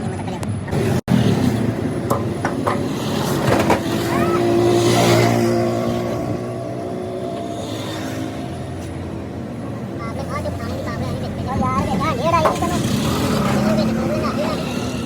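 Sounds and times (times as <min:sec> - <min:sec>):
vehicle passing: 0:00.7 - 0:15.0
sharp knocks: 0:02.0 - 0:04.6.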